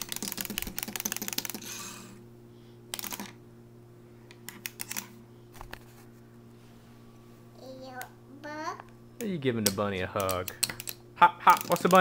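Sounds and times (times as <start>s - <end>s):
wind-up toy clockwork clicking: 11.5s - 12.0s.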